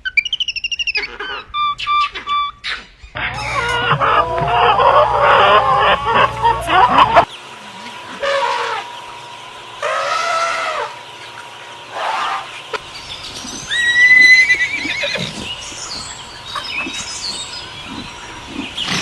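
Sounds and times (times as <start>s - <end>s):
horse whinnying: 13.7s - 15.4s.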